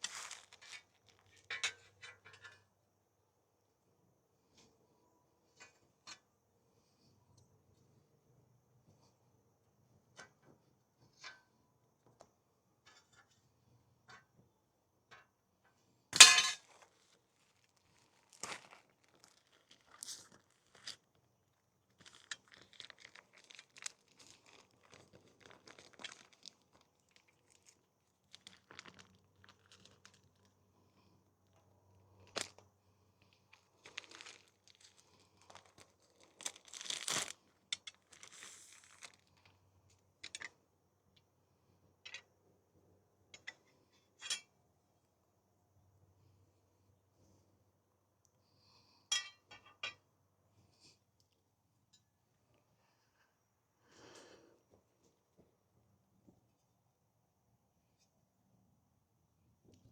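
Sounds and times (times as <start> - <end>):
tools and parts clicking and rustling: 0.4 - 2.8, 15.1 - 17.0.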